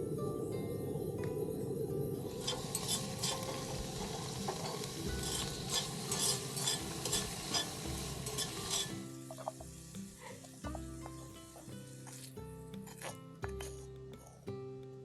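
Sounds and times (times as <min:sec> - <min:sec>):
food sizzling in a pan: 0:02.0 - 0:13.8
utensil scraping a pan: 0:02.3 - 0:13.8.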